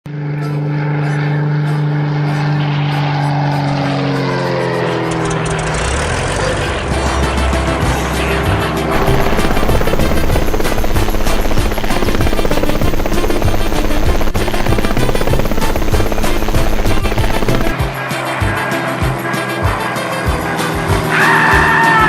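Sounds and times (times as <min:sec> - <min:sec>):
music: 0:00.3 - 0:22.0
rapid chopping rattling effect: 0:08.9 - 0:17.8.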